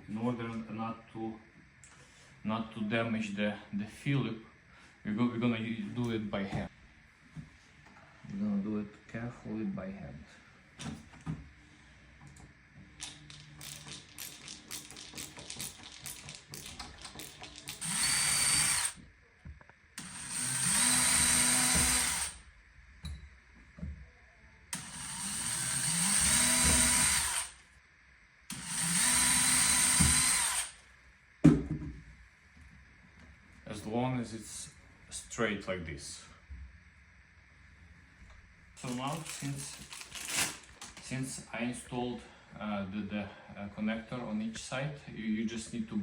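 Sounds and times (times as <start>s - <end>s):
cordless drill whining: 17.7s - 19.0s, 20.0s - 22.4s, 24.8s - 27.6s, 28.5s - 30.8s.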